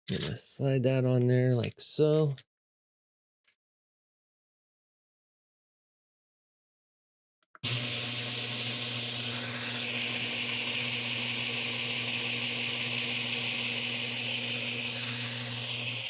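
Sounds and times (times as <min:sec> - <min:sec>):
belt grinder running: 0:07.6 - 0:16.0.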